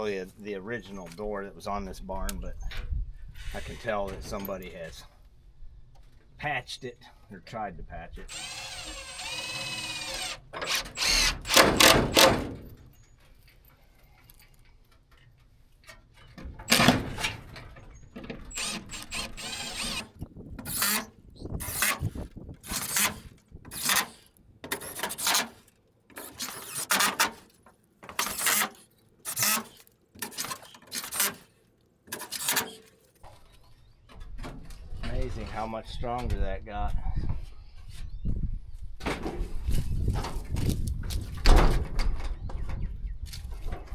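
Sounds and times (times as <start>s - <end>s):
cordless drill driving screws: 8.3s - 12.9s, 16.7s - 17.4s, 18.2s - 33.1s.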